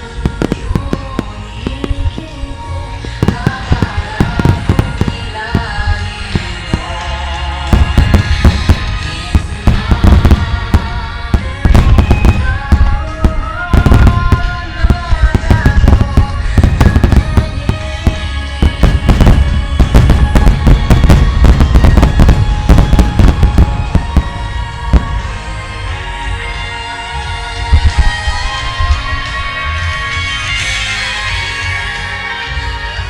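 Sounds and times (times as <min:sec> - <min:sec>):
fireworks bangs: 0:00.0 - 0:26.1
melodic music: 0:00.0 - 0:32.5.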